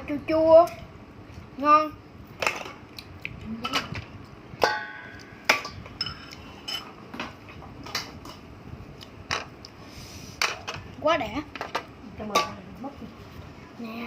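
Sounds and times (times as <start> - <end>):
tableware clattering: 4.6 - 8.2.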